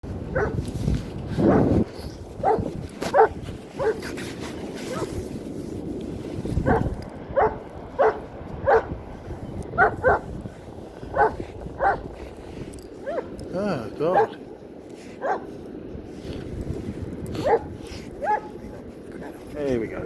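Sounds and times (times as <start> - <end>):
dog barking: 0.3 - 0.6, 2.4 - 4.0, 6.6 - 8.9, 9.8 - 10.2, 11.1 - 12.0, 13.0 - 13.3, 14.1 - 14.4, 15.2 - 15.5, 17.4 - 18.7.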